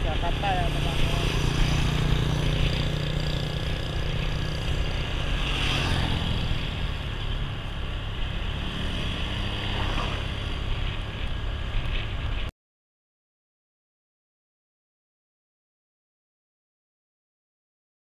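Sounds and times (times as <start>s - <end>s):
vehicle and road noise: 0.0s - 12.5s.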